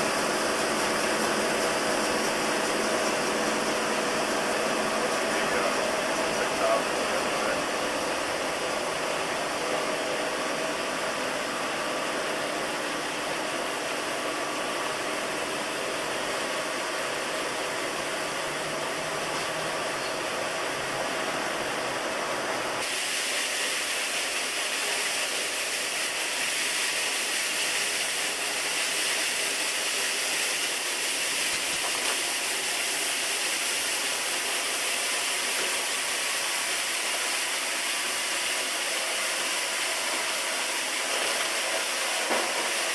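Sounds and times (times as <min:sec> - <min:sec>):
compressed air spraying hiss: 0:22.8 - 0:37.0.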